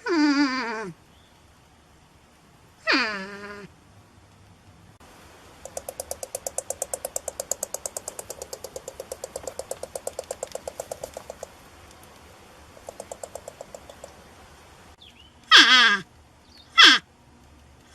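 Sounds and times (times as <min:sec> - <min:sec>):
porcupine clicking: 0:05.5 - 0:14.3.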